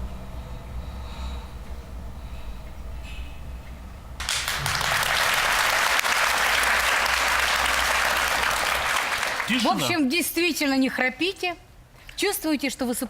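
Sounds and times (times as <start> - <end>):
low steady hum: 0.0 - 13.0
audience applauding: 4.2 - 10.0.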